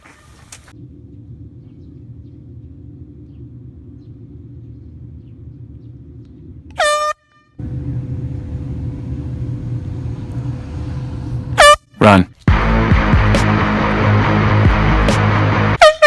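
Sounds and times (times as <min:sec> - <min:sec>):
steady low rumble: 0:00.7 - 0:06.7, 0:07.6 - 0:15.8
air horn blasts: 0:06.8 - 0:08.9, 0:11.5 - 0:12.2, 0:15.7 - 0:16.0.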